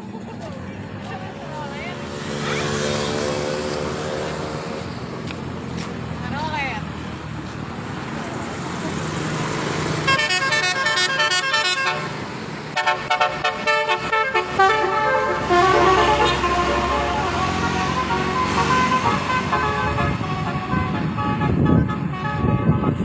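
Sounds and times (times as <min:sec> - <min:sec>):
vehicle engine rumbling: 0:00.0 - 0:23.0
bus horn playing a melody: 0:10.0 - 0:23.0.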